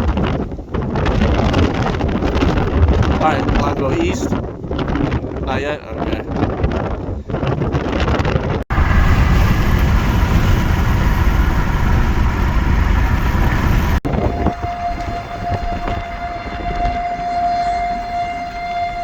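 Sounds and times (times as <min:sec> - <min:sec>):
wind buffeting microphone: 0:00.0 - 0:19.0
tornado warning siren wail: 0:08.7 - 0:19.0.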